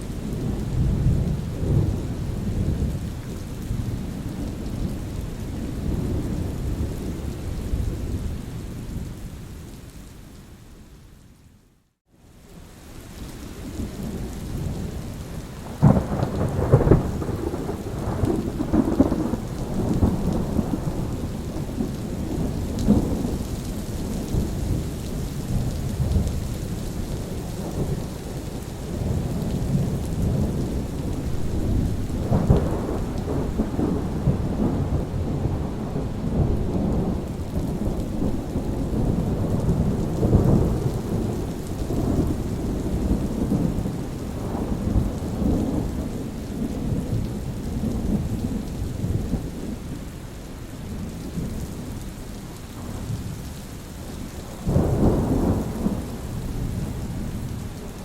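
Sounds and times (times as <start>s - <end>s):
steady rain: 0.0s - 58.0s
rolling thunder: 15.6s - 50.0s, 54.6s - 57.9s
sharp thunderclap: 29.0s - 46.0s.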